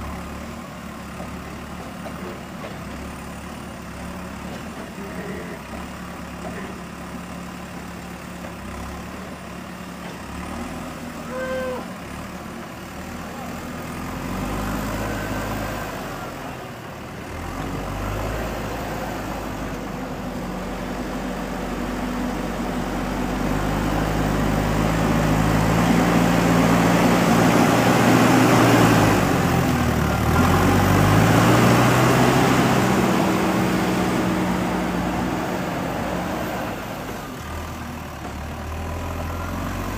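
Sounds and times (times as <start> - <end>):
diesel engine revving under load: 0.0 - 39.9
brief high tone: 11.3 - 11.9.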